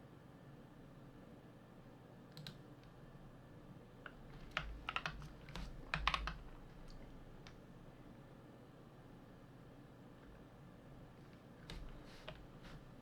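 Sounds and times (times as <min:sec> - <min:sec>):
mechanical keyboard keystrokes: 0:04.1 - 0:07.6.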